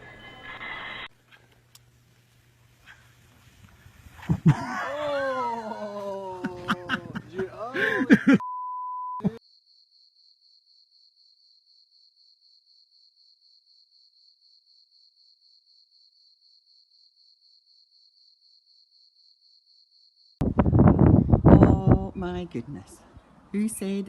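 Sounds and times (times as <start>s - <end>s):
short steady beep: 8.4s - 9.4s
high-pitched cricket chirping: 9.3s - 20.4s.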